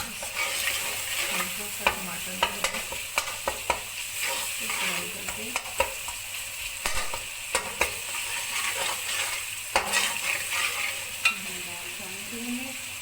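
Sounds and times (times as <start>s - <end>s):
spoon stirring: 0.0s - 11.5s
food sizzling in oil: 0.0s - 13.0s
spoon clicking against pan: 1.8s - 3.9s, 5.2s - 6.2s, 6.8s - 8.1s, 11.2s - 11.4s.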